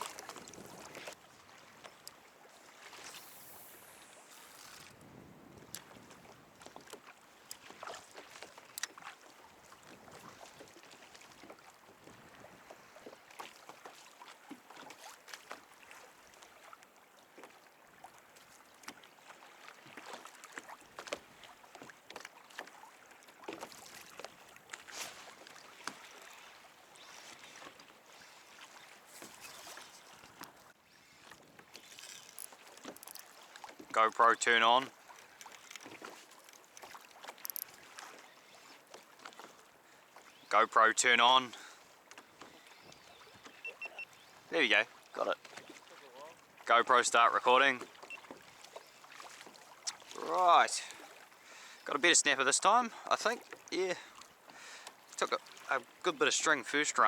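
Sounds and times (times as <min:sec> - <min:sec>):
water lapping against kayak: 0:00.0 - 0:57.0
small sharp clicks: 0:31.8 - 0:33.3, 0:35.1 - 0:37.8
water drips: 0:31.8 - 0:34.0.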